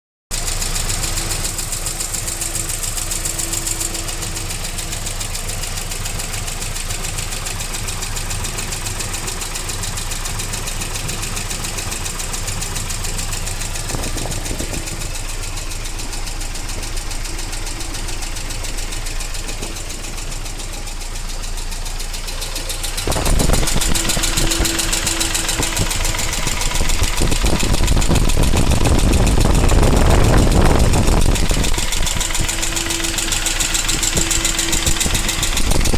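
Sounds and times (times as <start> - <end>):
car engine running: 0.3 - 35.9
fast ticking knock: 10.6 - 35.9.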